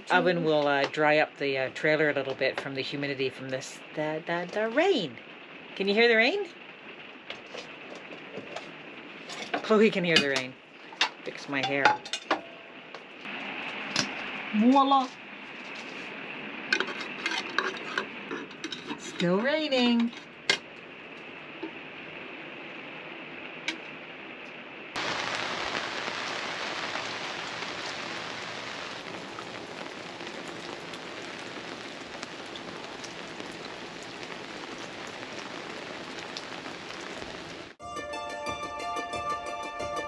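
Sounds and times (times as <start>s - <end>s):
steady rain falling: 0.0s - 37.8s
music: 37.8s - 40.0s.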